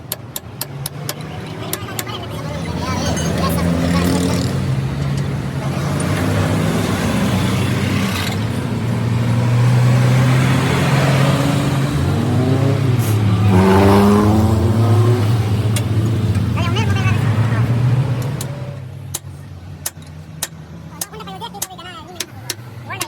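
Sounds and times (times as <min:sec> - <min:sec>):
engine running: 0:00.0 - 0:23.0.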